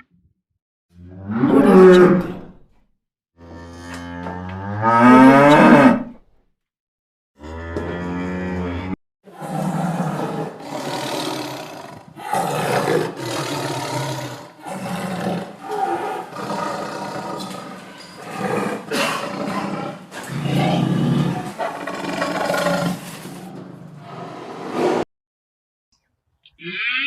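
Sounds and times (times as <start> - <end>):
tiger roaring: 1.1 - 2.4, 4.8 - 6.1, 7.4 - 24.5.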